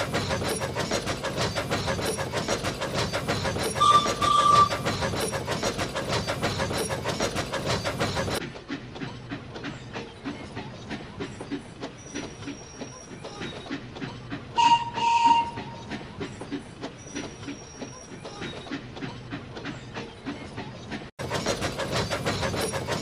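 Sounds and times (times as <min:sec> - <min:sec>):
steam locomotive chuffing: 0:00.0 - 0:23.0
wheels clicking over rail joints: 0:00.0 - 0:23.0
train whistle blasts: 0:03.8 - 0:04.7, 0:14.6 - 0:15.8.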